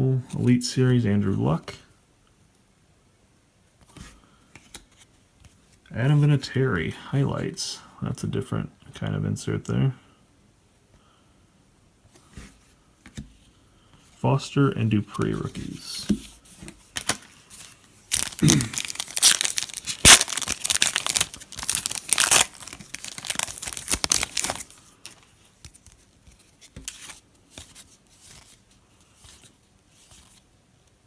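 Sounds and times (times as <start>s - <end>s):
cards rustling: 15.1s - 30.4s
foil wrapper tearing and crinkling: 18.1s - 24.8s.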